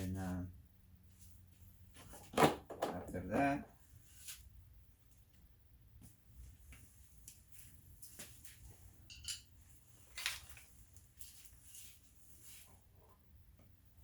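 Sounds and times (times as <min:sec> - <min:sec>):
clinks of small parts and tools: 0:09.1 - 0:09.5.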